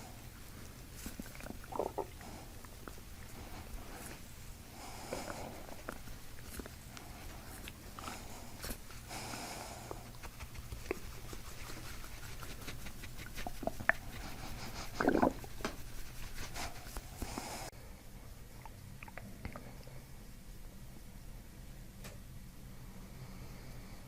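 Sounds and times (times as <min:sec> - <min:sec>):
hand rustling on skin: 0:00.0 - 0:17.7
stomach gurgles: 0:00.8 - 0:04.2, 0:12.7 - 0:15.7, 0:18.6 - 0:19.9.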